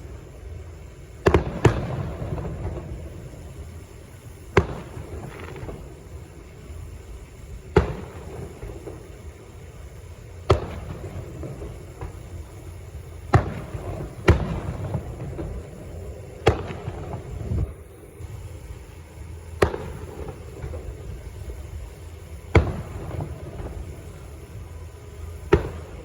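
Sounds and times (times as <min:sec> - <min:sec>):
fireworks bangs with rumbling echo: 0:00.0 - 0:26.0.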